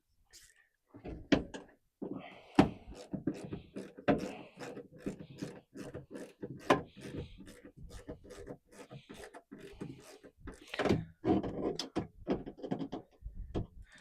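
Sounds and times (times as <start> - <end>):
hand tool clicking on screws: 2.5 - 11.1.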